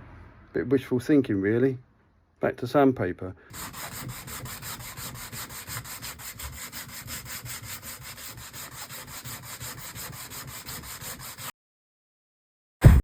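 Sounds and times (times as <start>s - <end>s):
sandpaper rubbing on wood: 3.5s - 11.5s.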